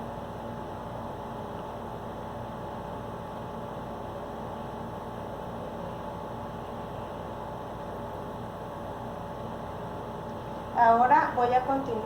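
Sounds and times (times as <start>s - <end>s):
steady electrical hum: 0.0s - 12.0s.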